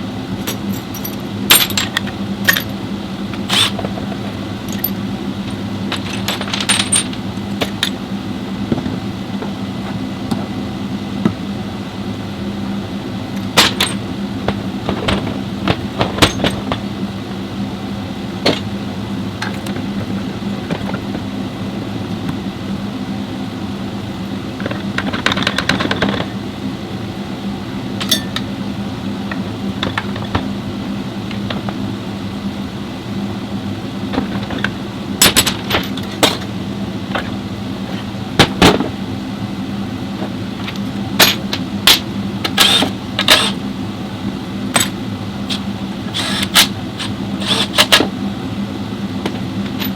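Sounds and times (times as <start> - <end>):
steady low hum: 0.0 - 49.9
metal tools clinking: 0.4 - 2.7, 3.5 - 8.0, 13.4 - 14.0, 28.0 - 28.4.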